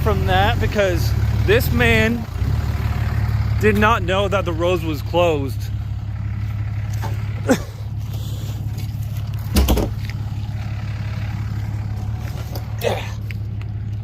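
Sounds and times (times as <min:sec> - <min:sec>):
diesel engine idling: 0:00.0 - 0:14.0.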